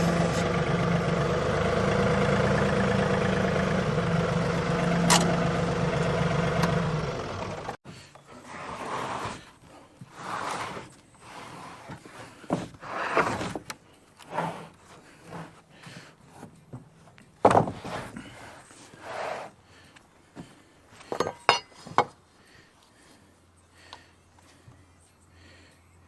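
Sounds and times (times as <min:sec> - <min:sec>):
engine idling: 0:00.0 - 0:07.8
knocks and rustles: 0:16.2 - 0:18.4.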